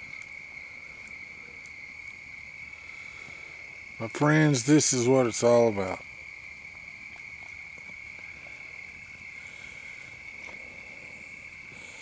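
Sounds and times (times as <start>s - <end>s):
animals trilling at night: 0.0s - 12.0s
campfire crackles: 0.0s - 12.0s.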